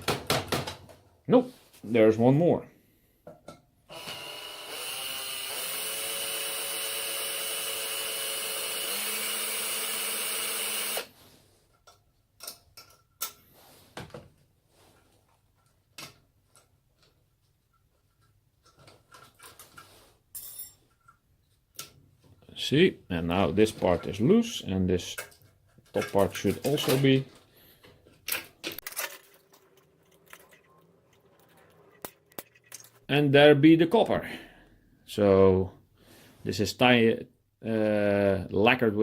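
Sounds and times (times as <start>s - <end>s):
power drill backing out screw: 3.9s - 11.1s.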